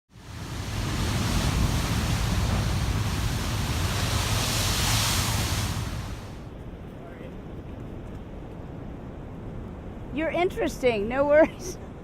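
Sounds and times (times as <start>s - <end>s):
ocean surf washing in: 0.1s - 6.5s
wind rumbling on microphone: 0.1s - 12.0s.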